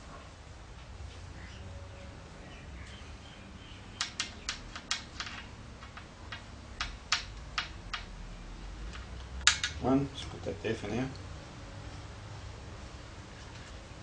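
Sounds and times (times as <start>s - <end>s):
metal screws clicking and tapping: 4.0s - 8.1s, 8.9s - 9.8s.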